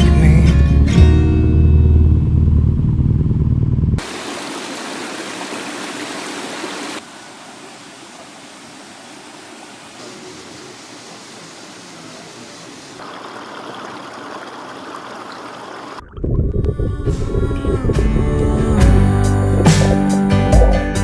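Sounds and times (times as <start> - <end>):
deep low rumble: 0.0 - 4.0, 16.1 - 20.8
stream rushing over rocks: 4.0 - 16.0.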